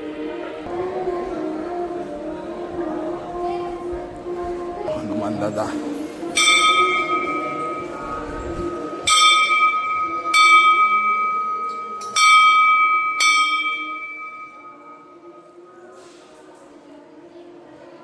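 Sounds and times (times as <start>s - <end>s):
temple bell ringing: 5.0s - 16.7s.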